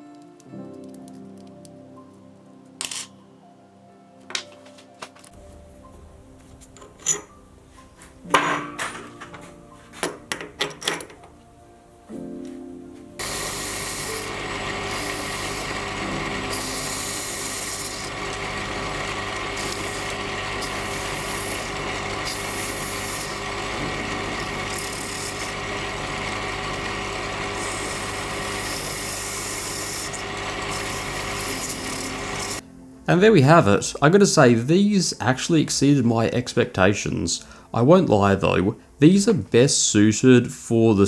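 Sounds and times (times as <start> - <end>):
scraping hiss of metal cutting: 13.2 - 18.2, 19.5 - 26.2, 27.5 - 32.6
machine tool motor hum: 13.2 - 32.6.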